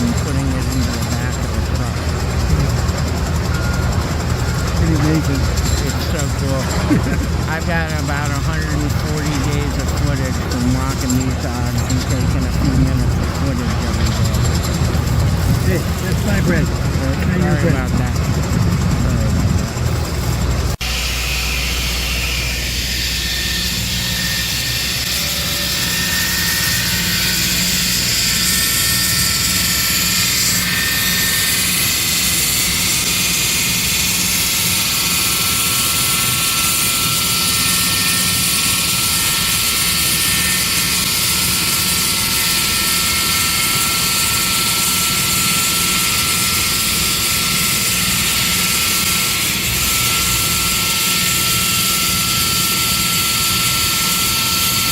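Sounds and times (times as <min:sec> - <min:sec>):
rock drill droning with whine: 0:00.0 - 0:54.9.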